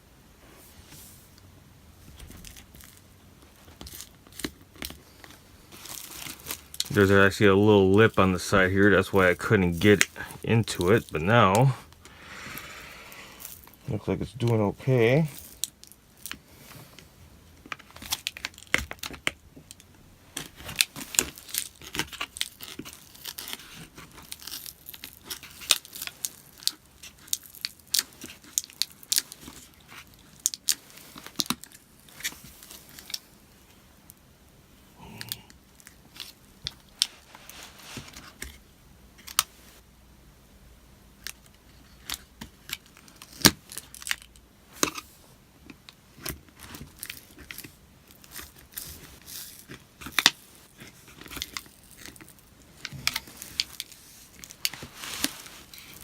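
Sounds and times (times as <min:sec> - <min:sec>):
adhesive crackling and tearing: 0:17.7 - 0:33.3, 0:41.2 - 0:45.0, 0:46.2 - 0:56.0.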